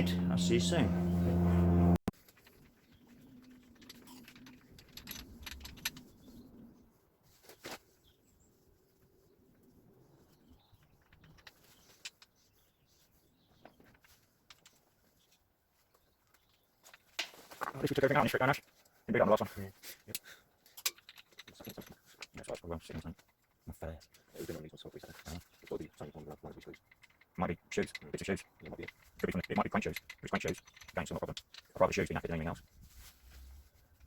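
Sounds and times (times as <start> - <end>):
tools and metal parts clicking: 2.2 - 6.5, 10.6 - 12.6, 18.5 - 32.8.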